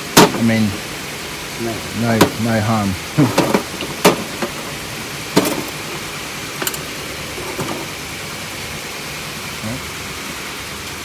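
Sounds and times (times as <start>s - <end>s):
steady background hiss: 0.0s - 11.0s
metal tools clicking and knocking: 6.6s - 6.8s.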